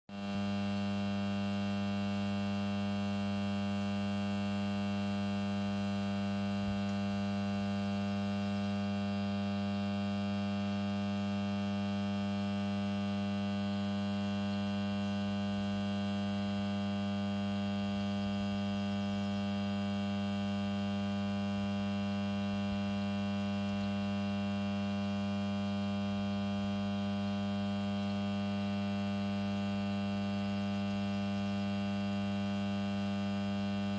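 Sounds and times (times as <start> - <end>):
power transformer humming: 0.1 - 33.9.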